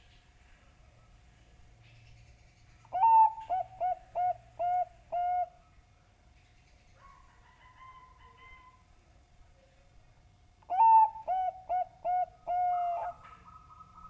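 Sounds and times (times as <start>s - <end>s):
dove cooing: 2.9s - 5.6s, 10.7s - 14.0s.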